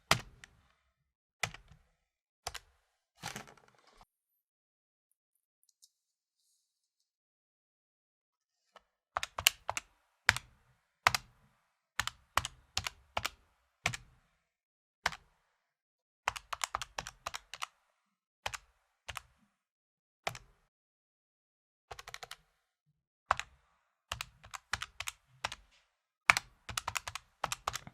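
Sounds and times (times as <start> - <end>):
calculator keys clicking: 26.3 - 27.9.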